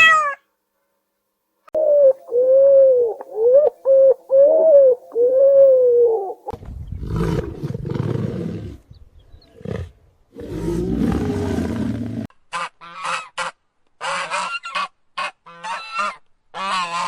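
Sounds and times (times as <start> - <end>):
cat meowing: 0.0 - 0.4.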